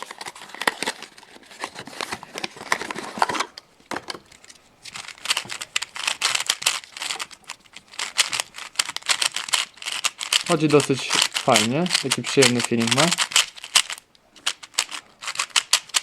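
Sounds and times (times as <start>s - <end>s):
plastic packaging crinkling: 0.0s - 16.0s
puzzle cube layers clicking: 4.9s - 16.0s.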